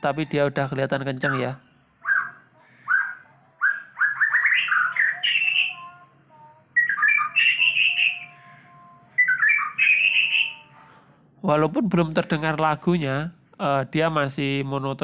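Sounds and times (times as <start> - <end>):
bird chirping hoarsely: 1.2 - 6.0, 6.7 - 11.1.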